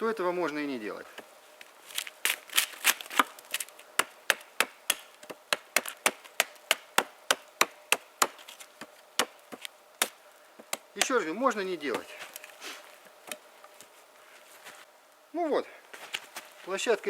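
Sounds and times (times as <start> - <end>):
blade chopping into log: 4.0 - 8.4.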